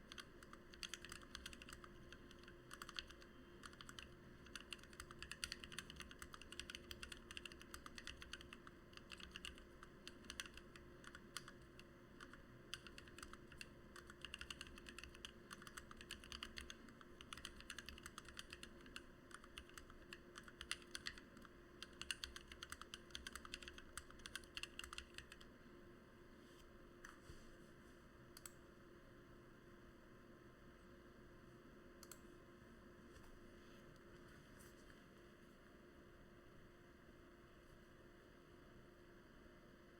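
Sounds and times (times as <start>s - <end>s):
typing on mechanical keyboard: 0.0s - 25.5s.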